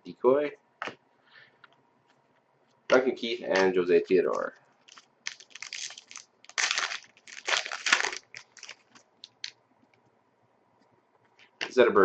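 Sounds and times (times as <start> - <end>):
plastic wrapper crinkling: 4.3 - 9.6.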